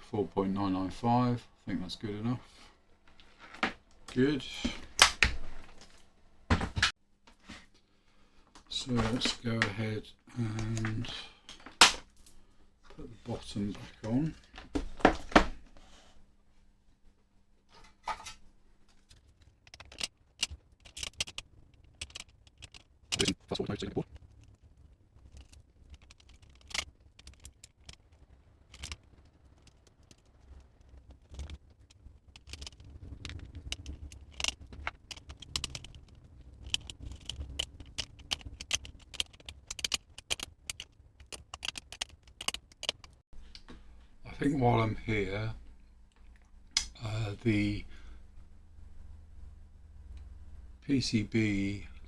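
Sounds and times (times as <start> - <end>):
metal parts clicking and clinking: 19.6 - 23.4, 32.3 - 43.2
faint steady hum: 42.8 - 52.0.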